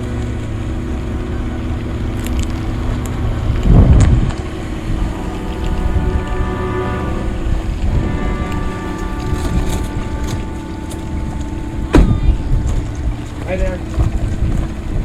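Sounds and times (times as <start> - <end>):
loud rush of wind or water: 0.0 - 15.0
outboard motor running: 0.0 - 15.0.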